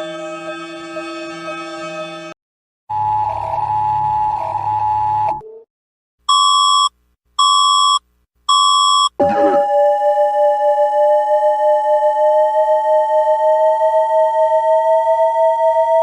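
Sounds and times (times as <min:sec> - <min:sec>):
long beeps: 0:06.3 - 0:16.0
pulsing two-note alarm tone: 0:09.2 - 0:16.0.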